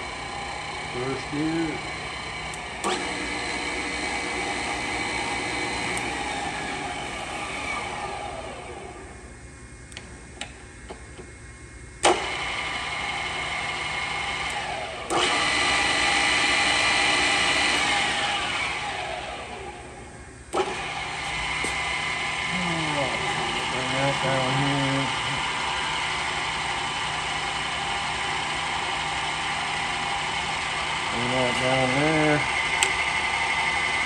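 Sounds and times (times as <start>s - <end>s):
drill press motor running: 0.0s - 9.2s, 12.0s - 34.0s
motor winding down whine: 0.0s - 9.2s, 12.0s - 34.0s.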